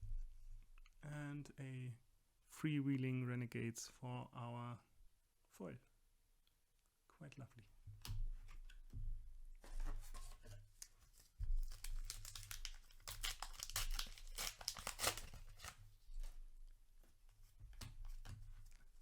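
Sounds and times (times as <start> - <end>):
paper wrapper tearing and crumpling: 11.7 - 15.8.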